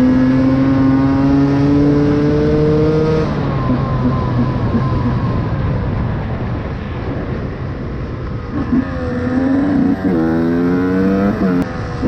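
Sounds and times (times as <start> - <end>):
two-stroke motorcycle engine revving: 0.0 - 5.4, 8.4 - 12.0.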